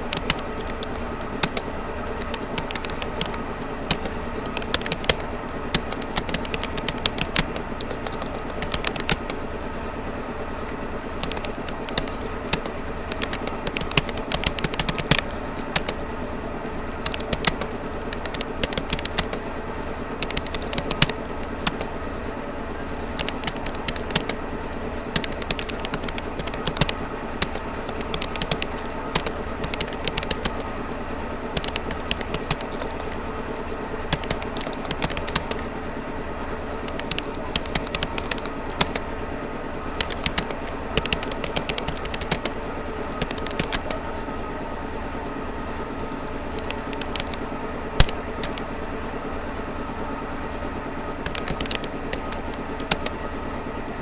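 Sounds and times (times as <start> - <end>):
keyboard key clicks: 0.0 - 9.4, 10.7 - 16.0, 17.0 - 19.4, 20.2 - 21.9, 23.1 - 24.4, 25.1 - 30.7, 31.6 - 33.2, 34.1 - 35.7, 36.8 - 39.1, 40.0 - 42.6, 43.2 - 44.0, 46.6 - 47.4, 48.0 - 48.7, 51.2 - 53.2
steady background hum: 0.0 - 54.0.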